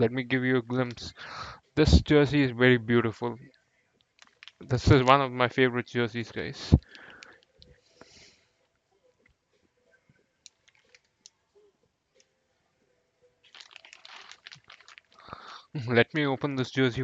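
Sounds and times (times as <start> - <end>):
packaging rustling: 4.2 - 4.8, 13.4 - 15.8
faint clicks: 6.8 - 7.8.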